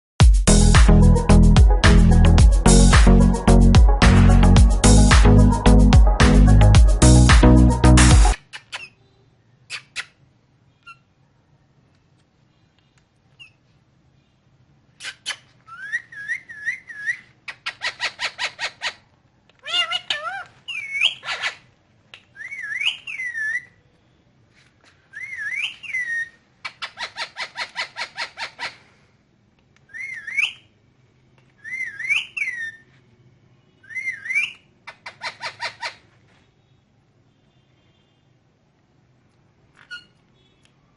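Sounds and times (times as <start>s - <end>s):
parakeet whistling and squawking: 15.0s - 19.0s, 19.6s - 23.8s, 25.1s - 28.9s, 29.9s - 30.7s, 31.6s - 32.9s, 33.8s - 36.0s, 39.8s - 40.2s.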